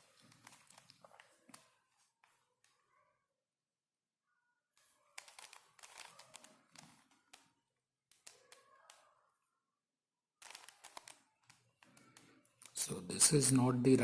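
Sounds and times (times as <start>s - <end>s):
plastic puzzle clicking: 5.1s - 9.0s, 10.4s - 12.8s.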